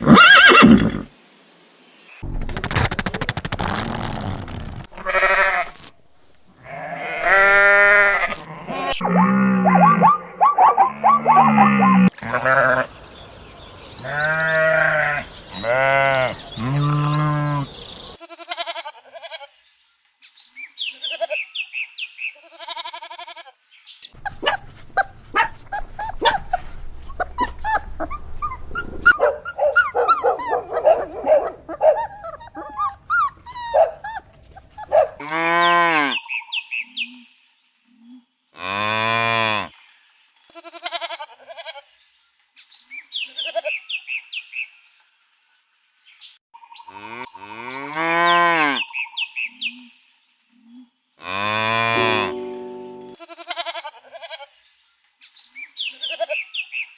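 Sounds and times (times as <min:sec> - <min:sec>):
animal bleats: 0:03.8 - 0:05.9, 0:06.6 - 0:10.2, 0:10.8 - 0:12.9, 0:14.0 - 0:19.6, 0:20.9 - 0:21.5, 0:22.4 - 0:23.6, 0:35.2 - 0:36.2, 0:38.6 - 0:39.7, 0:40.5 - 0:41.9, 0:43.4 - 0:43.8, 0:46.9 - 0:48.8, 0:51.2 - 0:52.4, 0:53.1 - 0:54.5, 0:55.9 - 0:56.5
overlapping animal calls: 0:06.6 - 0:12.9, 0:24.2 - 0:36.2.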